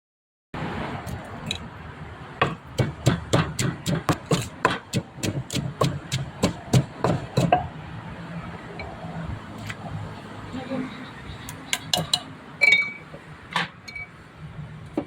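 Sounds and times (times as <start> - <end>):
pestle pounding in a mortar: 2.4 - 7.8.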